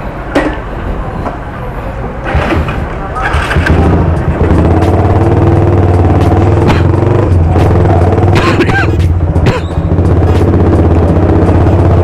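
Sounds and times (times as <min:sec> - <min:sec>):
irregular noisy sound: 0:00.0 - 0:12.0
motorcycle engine running: 0:03.2 - 0:12.0.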